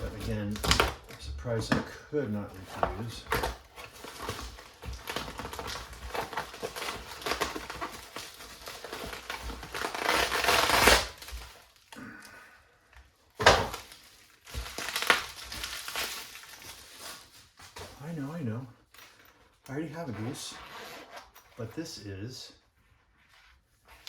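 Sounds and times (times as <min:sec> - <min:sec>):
packaging crinkling and rustling: 0:00.0 - 0:12.0, 0:13.2 - 0:18.1.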